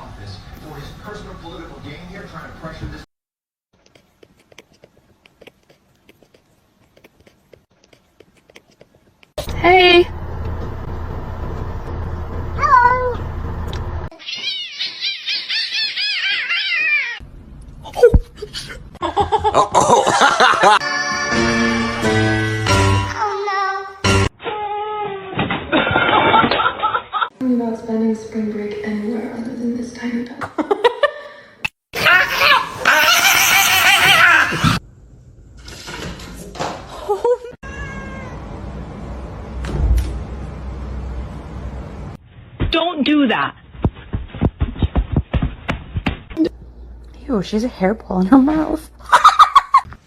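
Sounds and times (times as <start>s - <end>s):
cat meowing: 14.1s - 17.2s, 37.6s - 38.5s
music: 20.8s - 23.2s, 24.0s - 24.3s
thump: 39.6s - 40.2s.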